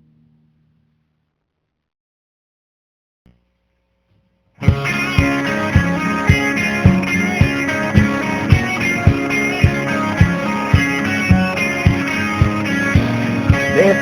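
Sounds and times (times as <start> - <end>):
country-rock guitars: 4.6 - 14.0
steady kick-drum beat: 4.6 - 14.0.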